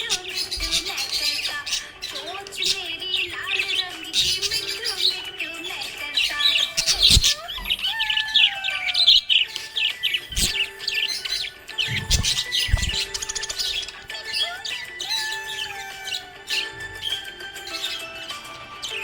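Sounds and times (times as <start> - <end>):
budgerigars chirping and warbling: 0.0 - 19.0.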